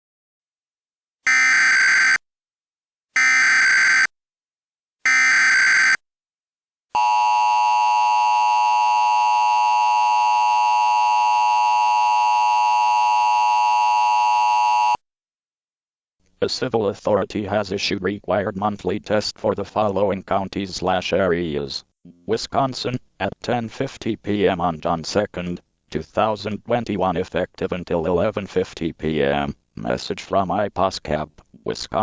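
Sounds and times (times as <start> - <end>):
two-tone attention signal: 1.3 - 2.2, 3.2 - 4.1, 5.1 - 6.0, 7.0 - 15.0.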